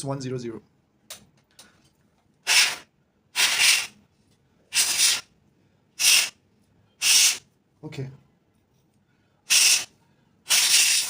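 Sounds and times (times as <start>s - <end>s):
compressed air bursts hissing: 2.4s - 4.0s, 4.7s - 5.3s, 6.0s - 6.4s, 7.0s - 7.4s, 9.5s - 9.9s, 10.5s - 11.0s.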